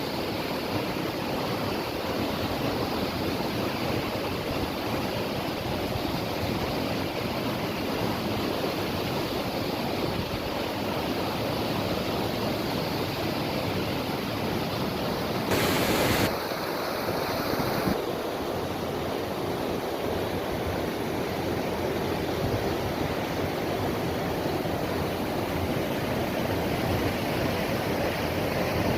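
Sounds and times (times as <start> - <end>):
falling water rushing: 15.2 - 18.0
burst of noise: 15.5 - 16.6.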